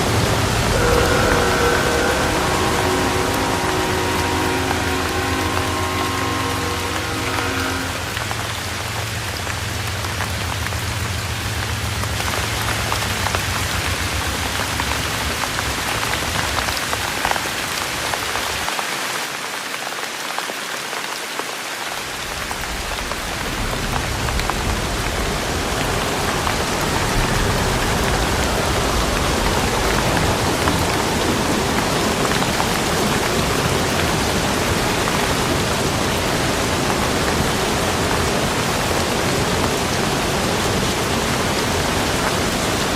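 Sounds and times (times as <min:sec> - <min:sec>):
low rumble: 0:00.0 - 0:17.0, 0:22.1 - 0:39.4
steady rain falling: 0:00.0 - 0:42.9.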